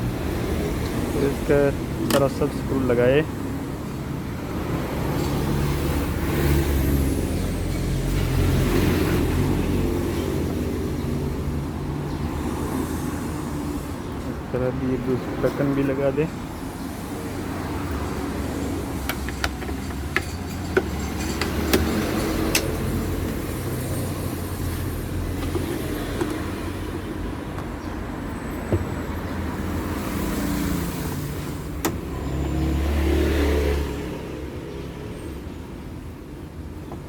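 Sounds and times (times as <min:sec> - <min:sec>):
plastic covers clicking: 0:19.0 - 0:22.7.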